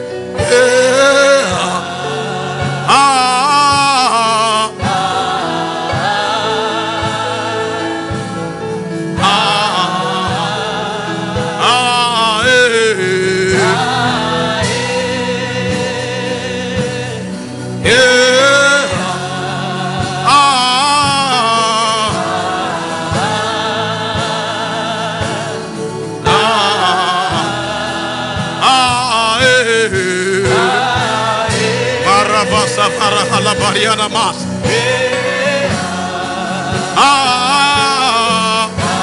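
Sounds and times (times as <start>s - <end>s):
person singing with vibrato: 0.0s - 39.0s
backing chords and steady beat: 13.4s - 39.0s.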